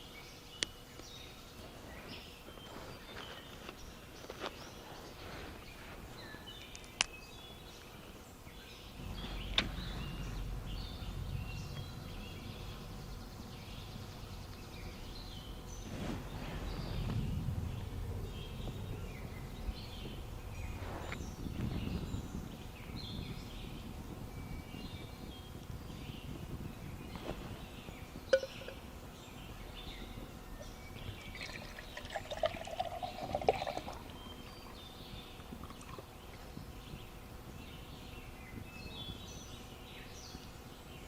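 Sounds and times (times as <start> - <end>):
small birds chirping: 0.0 - 41.0
low rumble: 8.9 - 31.2.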